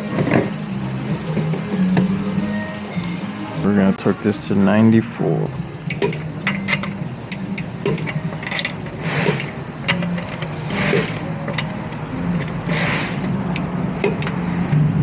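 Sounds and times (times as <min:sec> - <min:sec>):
torque wrench clicking: 0:05.9 - 0:14.8
short hisses: 0:12.8 - 0:13.2.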